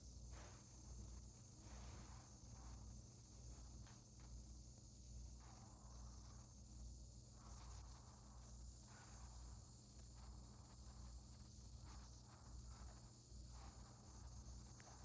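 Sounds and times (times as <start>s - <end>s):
faint low hum and hiss: 0.0s - 15.0s.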